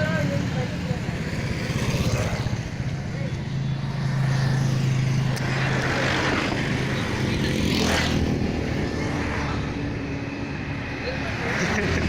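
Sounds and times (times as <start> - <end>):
traffic rumble: 0.0 - 12.0
vehicle passing close: 1.0 - 12.0.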